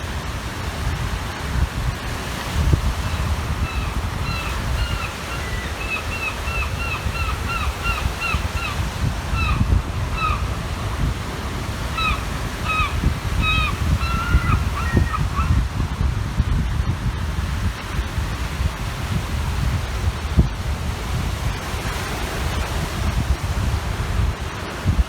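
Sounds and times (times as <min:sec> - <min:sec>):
waves on the shore: 0:00.0 - 0:25.0
wind on microphone: 0:00.0 - 0:25.0
gull calling: 0:03.6 - 0:10.8, 0:11.8 - 0:15.6.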